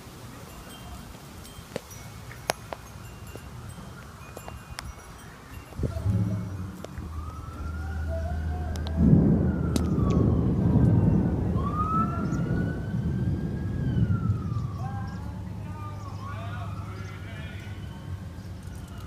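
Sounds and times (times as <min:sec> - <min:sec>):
siren wailing: 0:05.8 - 0:16.9
low rumble of thunder: 0:05.9 - 0:15.6.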